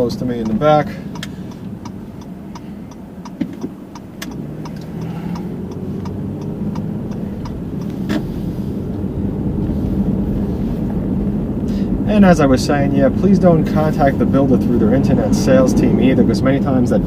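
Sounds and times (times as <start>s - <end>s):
car turn signal ticking: 0.0s - 8.4s
engine and road rumble: 0.0s - 17.0s.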